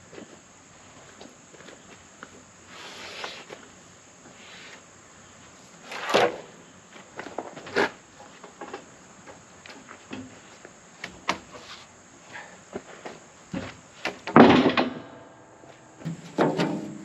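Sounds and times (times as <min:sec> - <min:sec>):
wood slabs scraping and knocking: 0:16.0 - 0:17.0.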